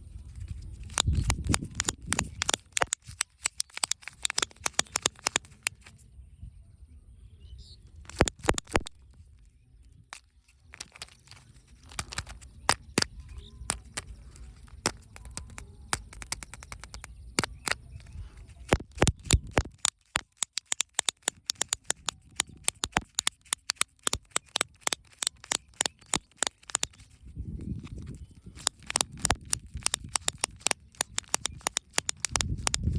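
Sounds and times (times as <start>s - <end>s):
packaging clicks cracks and crinkles: 0.3s - 6.0s, 8.1s - 32.9s.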